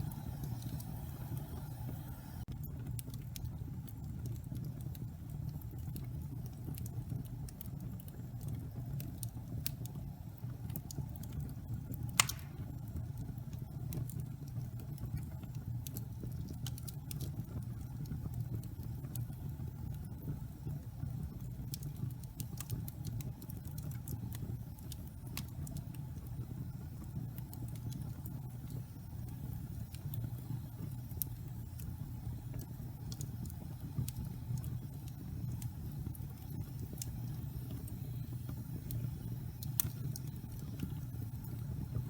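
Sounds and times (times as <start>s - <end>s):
low rumble of flames: 0.0s - 42.0s
logs crackling and popping: 2.4s - 42.0s.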